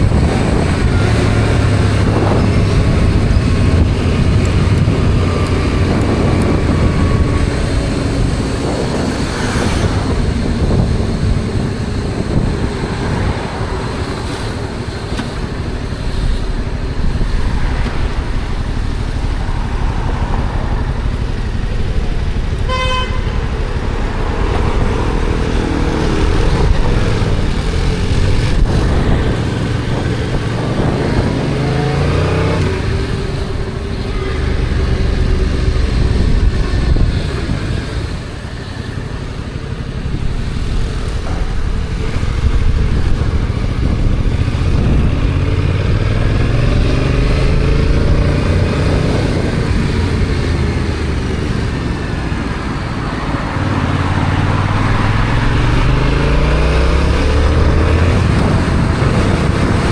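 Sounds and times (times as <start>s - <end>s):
motorcycle engine accelerating: 0.0s - 59.9s
horn toot: 22.5s - 25.4s.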